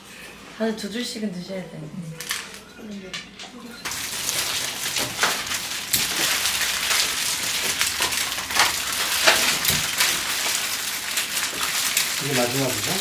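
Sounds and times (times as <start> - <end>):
candy wrappers crinkling: 3.8 - 13.0.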